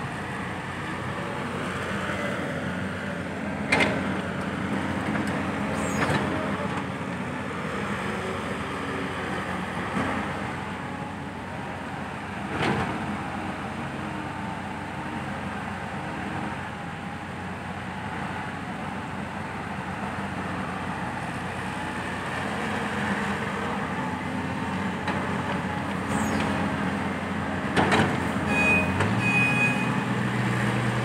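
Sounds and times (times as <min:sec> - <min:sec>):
diesel engines running: 0:00.0 - 0:31.0
short high tone: 0:28.5 - 0:30.0.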